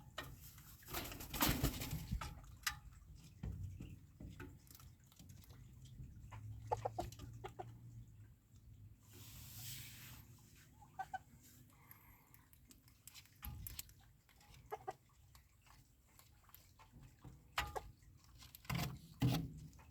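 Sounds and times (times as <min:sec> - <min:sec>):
hens clucking: 0:05.6 - 0:07.9, 0:10.7 - 0:11.9, 0:14.5 - 0:15.6.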